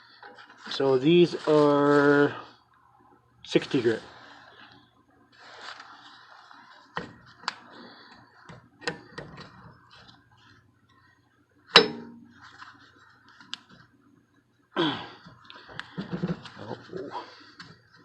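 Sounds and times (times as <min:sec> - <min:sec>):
metallic clank with ring: 0:11.8 - 0:12.3.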